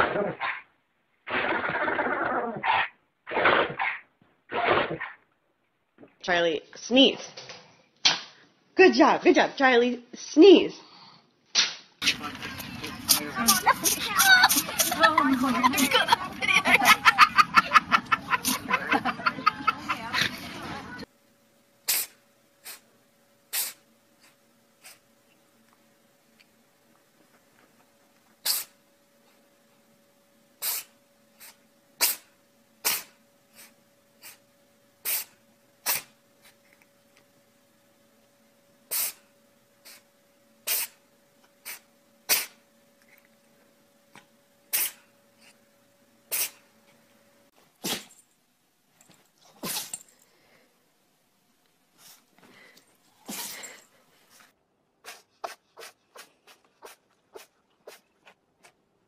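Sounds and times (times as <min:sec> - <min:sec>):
pet sneezing: 0:00.0 - 0:00.6, 0:01.3 - 0:05.2, 0:13.0 - 0:16.0, 0:21.8 - 0:22.9, 0:23.5 - 0:25.0, 0:28.4 - 0:28.8, 0:30.6 - 0:34.4, 0:35.0 - 0:36.2, 0:38.9 - 0:39.2, 0:40.6 - 0:41.0, 0:41.6 - 0:42.6, 0:44.7 - 0:45.0, 0:46.3 - 0:46.6, 0:47.8 - 0:48.2, 0:49.5 - 0:50.0, 0:53.2 - 0:53.8, 0:55.0 - 0:58.1
faint steady hum: 0:05.2 - 0:59.0.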